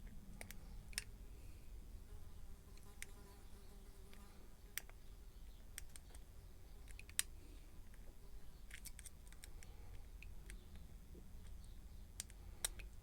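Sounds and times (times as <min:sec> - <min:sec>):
lock pick clicking in lock: 0:08.7 - 0:09.7.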